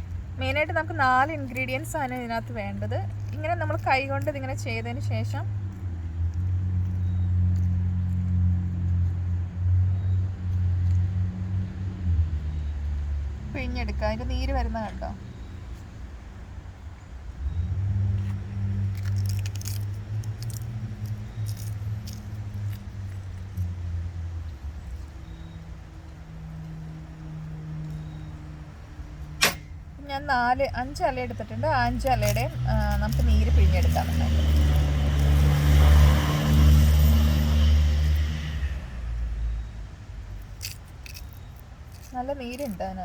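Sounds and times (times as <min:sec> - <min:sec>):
vehicle engine humming: 0:00.0 - 0:43.0
leaves crushed by hand crackling: 0:18.2 - 0:23.8, 0:31.5 - 0:38.3, 0:40.3 - 0:43.0.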